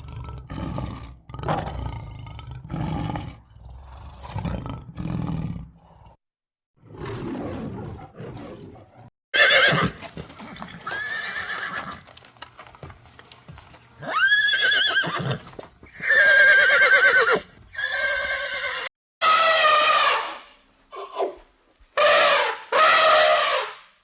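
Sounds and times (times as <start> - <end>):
horse whinnying: 9.3 - 10.0, 10.6 - 12.0, 14.0 - 20.0.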